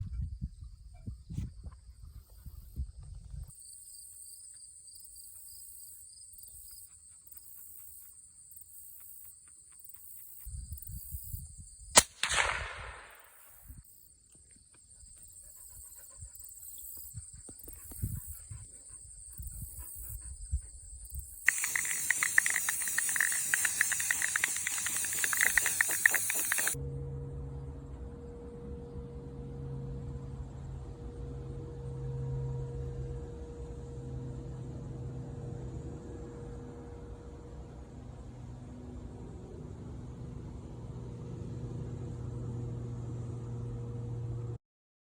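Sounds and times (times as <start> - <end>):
suppressed gunshot: 12.0 - 13.4
insects chirping: 21.0 - 26.8
loud steady hiss: 21.5 - 26.8.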